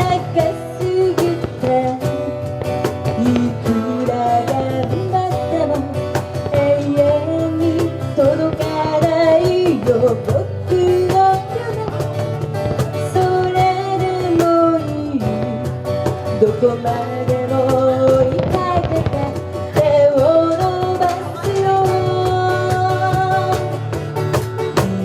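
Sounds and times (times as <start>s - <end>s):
person singing: 0.0s - 23.9s, 24.6s - 25.0s
strummed acoustic guitar: 0.0s - 25.0s.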